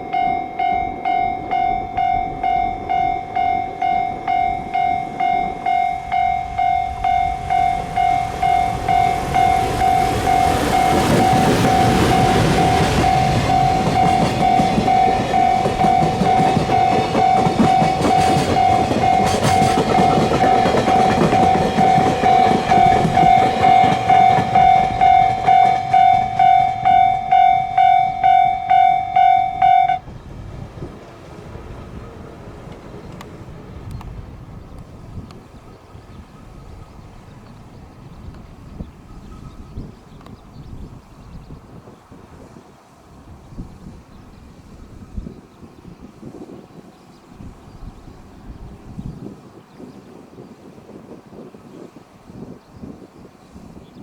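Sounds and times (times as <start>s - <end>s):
level crossing alarm pulsing: 0.0s - 30.0s
train rumble and wheel clatter: 0.0s - 54.0s.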